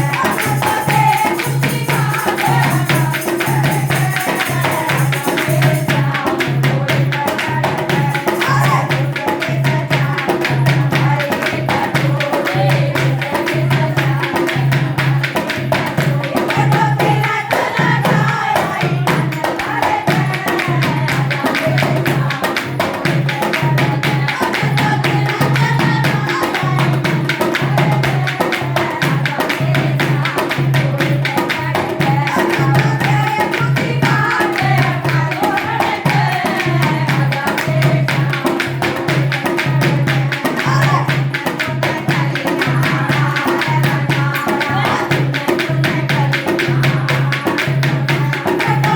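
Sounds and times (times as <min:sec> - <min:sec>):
hand drums: 0:00.0 - 0:48.9
rapid jingling percussion: 0:00.0 - 0:48.9
person singing: 0:07.2 - 0:10.0, 0:32.2 - 0:36.5, 0:40.3 - 0:47.6.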